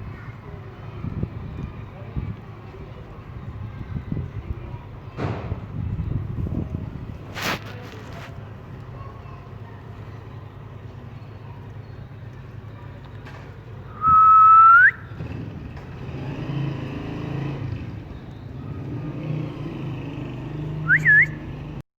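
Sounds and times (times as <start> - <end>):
parrot whistle: 14.0 - 15.1, 20.9 - 21.4
parrot short rising chirps: 20.9 - 21.4.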